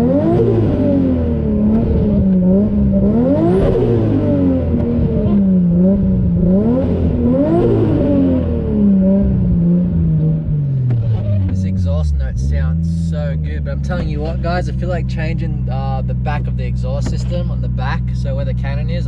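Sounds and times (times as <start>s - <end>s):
turbocharged car engine revving: 0.0s - 19.0s.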